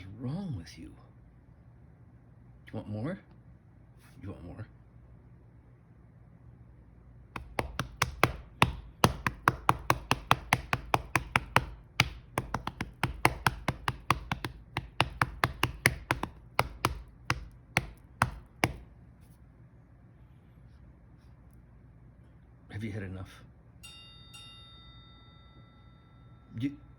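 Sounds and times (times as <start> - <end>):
hand patting cat's belly: 7.4 - 19.4.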